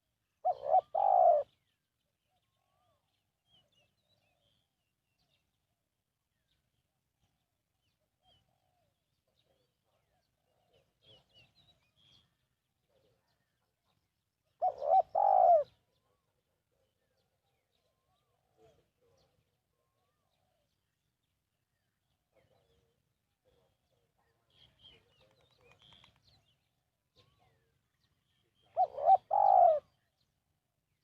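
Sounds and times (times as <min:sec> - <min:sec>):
faint small bird chirps: 0:00.3 - 0:30.4
dove cooing: 0:00.4 - 0:01.5, 0:14.6 - 0:15.8, 0:28.6 - 0:30.0.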